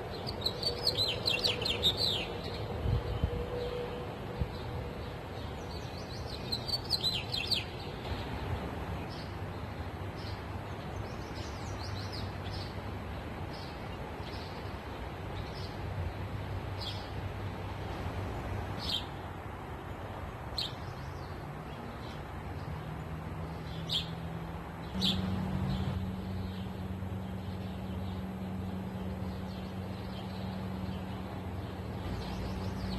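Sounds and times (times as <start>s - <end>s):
songbirds chirping: 0.0s - 32.9s
low steady hum: 7.6s - 32.9s.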